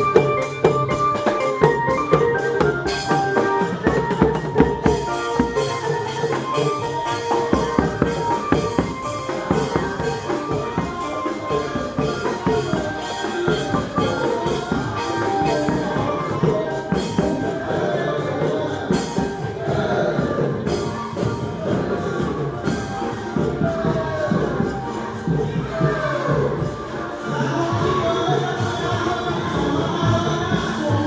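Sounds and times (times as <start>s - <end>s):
festive music with drum beat: 0.0s - 31.0s.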